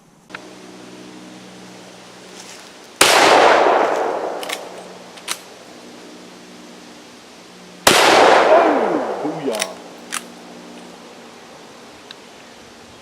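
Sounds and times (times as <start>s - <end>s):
rifle gunshot with echo: 3.0s - 5.0s, 7.8s - 9.8s.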